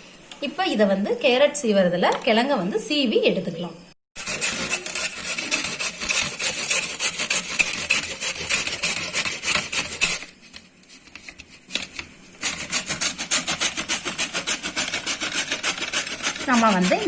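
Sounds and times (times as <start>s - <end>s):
grater rasping root: 4.2s - 10.4s, 11.2s - 17.0s.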